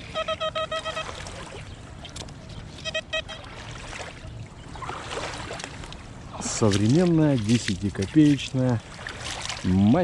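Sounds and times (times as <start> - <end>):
metal detector beeps: 0.0 - 1.0.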